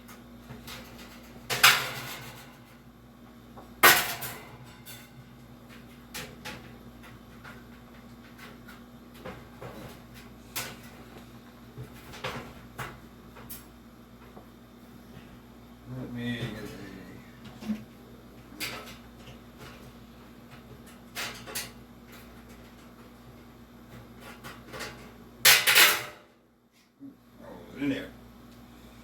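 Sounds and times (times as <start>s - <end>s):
metal fan grill clanks: 0.0s - 2.8s, 3.8s - 11.0s, 20.5s - 23.1s, 23.9s - 26.3s.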